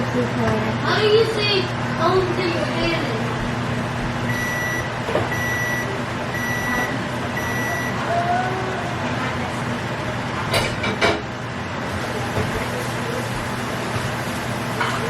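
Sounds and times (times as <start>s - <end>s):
steady electrical hum: 0.0s - 15.0s
kitchen appliance beeping: 3.2s - 8.3s.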